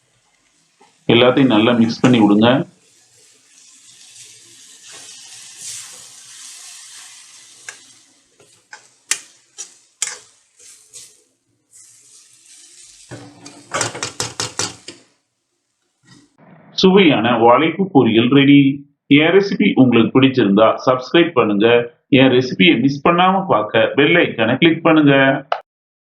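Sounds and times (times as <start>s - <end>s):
food sizzling in a pan: 0.0s - 16.4s
metal spatula scraping a pan: 2.0s - 15.1s.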